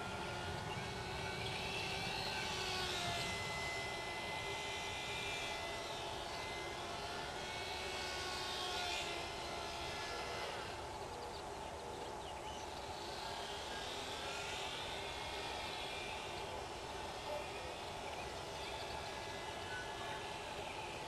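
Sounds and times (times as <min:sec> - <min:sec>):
model plane motor whining: 0:00.0 - 0:12.1, 0:12.7 - 0:21.0.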